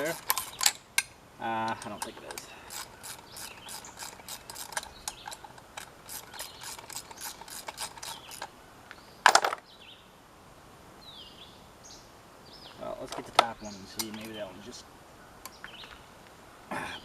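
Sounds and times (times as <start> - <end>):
hand ratchet clicking: 0.0 - 1.1, 1.7 - 8.5
metallic rattle: 0.0 - 1.1, 1.7 - 8.5.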